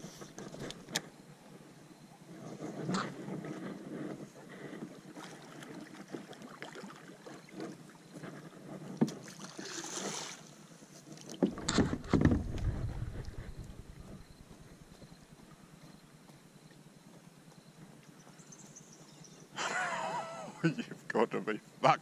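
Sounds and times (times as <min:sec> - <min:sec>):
water sloshing and splashing: 0:05.0 - 0:08.1, 0:08.8 - 0:15.4
knocks against kayak hull: 0:11.4 - 0:14.1
low rumble: 0:11.5 - 0:15.3.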